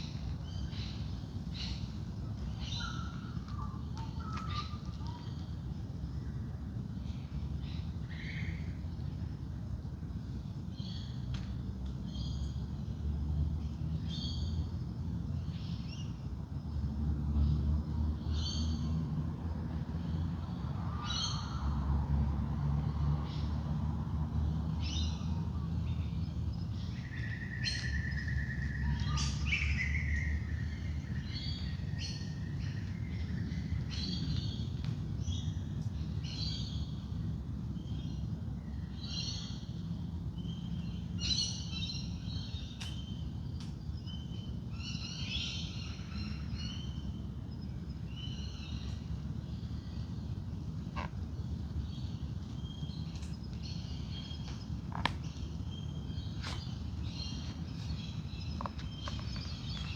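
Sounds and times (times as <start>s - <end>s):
birds chirping and twittering: 37.8s - 59.9s.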